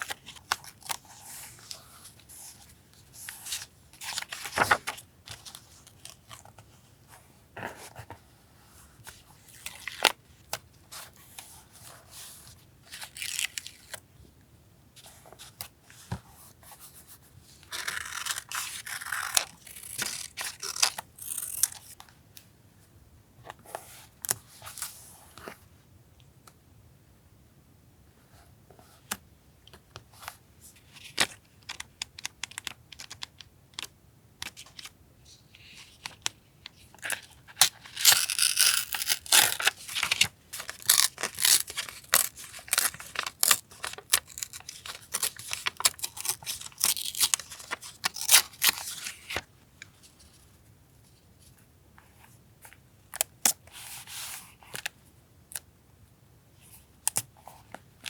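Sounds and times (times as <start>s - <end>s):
paper tearing and rustling: 37.6s - 49.4s.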